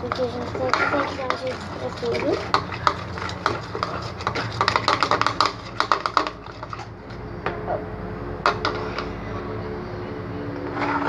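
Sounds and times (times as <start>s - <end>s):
spoon scraping a container: 0.0s - 7.0s, 10.7s - 11.0s.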